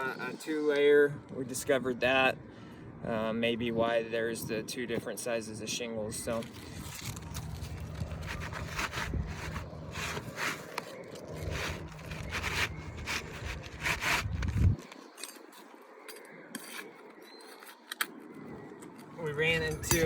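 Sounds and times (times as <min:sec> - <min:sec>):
scraping roofing shingles: 0:06.8 - 0:15.7.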